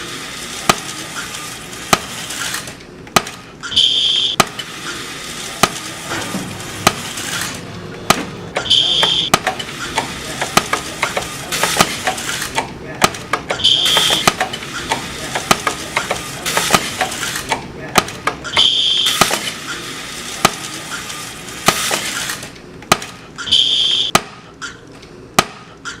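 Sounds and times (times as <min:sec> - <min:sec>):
short high beep: 0:03.7 - 0:04.4, 0:08.6 - 0:09.3, 0:13.6 - 0:14.3, 0:18.5 - 0:19.2, 0:23.4 - 0:24.1
voices: 0:07.6 - 0:20.0.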